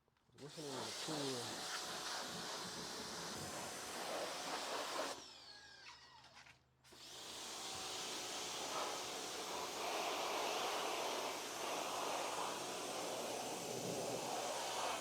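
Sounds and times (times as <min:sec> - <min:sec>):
pressure washer spraying: 0:10.6 - 0:13.3, 0:14.1 - 0:15.0.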